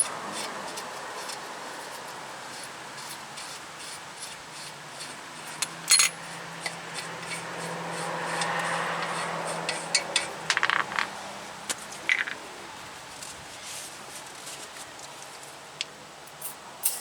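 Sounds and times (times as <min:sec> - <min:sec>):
hand tools clinking on metal: 0:05.6 - 0:06.3, 0:16.3 - 0:17.0.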